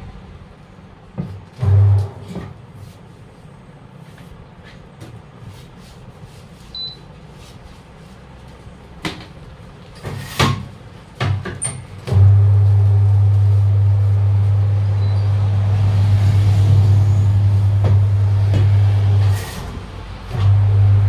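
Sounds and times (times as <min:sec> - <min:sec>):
low steady hum: 0:00.0 - 0:04.6, 0:12.0 - 0:21.0.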